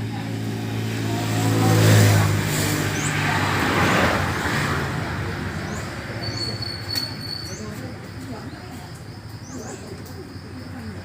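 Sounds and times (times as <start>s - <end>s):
vehicle passing by: 0.0s - 8.1s.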